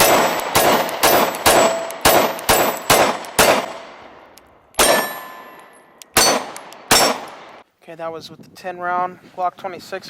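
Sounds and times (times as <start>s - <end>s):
pistol shots: 0.0s - 4.2s, 4.8s - 7.6s.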